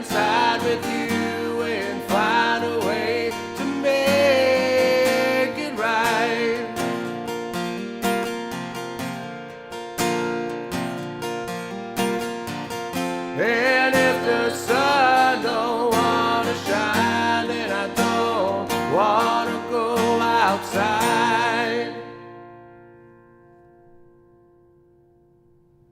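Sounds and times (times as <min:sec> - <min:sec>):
wavering sung melody: 0:00.0 - 0:07.2
strummed acoustic guitar: 0:00.0 - 0:25.8.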